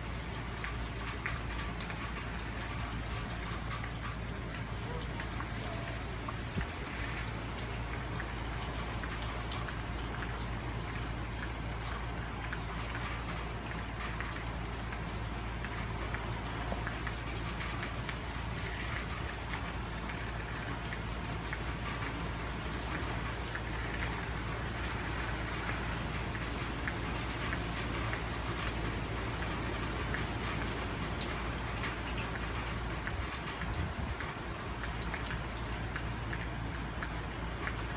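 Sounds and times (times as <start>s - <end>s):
heavy rain hissing: 2.2s - 13.0s.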